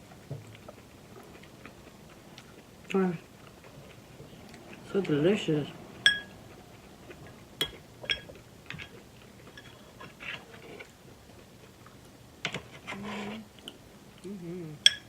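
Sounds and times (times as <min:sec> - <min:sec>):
quiet chewing: 0:00.0 - 0:14.8
food and utensils clicking: 0:07.6 - 0:10.9.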